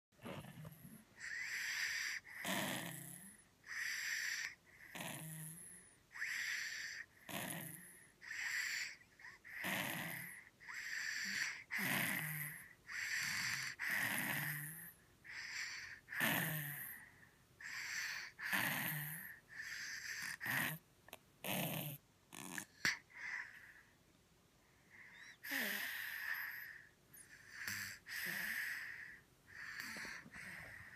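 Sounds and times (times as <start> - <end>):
snoring through blocked nose: 0.2 - 8.8, 9.5 - 17.1, 17.8 - 20.8, 21.4 - 23.0.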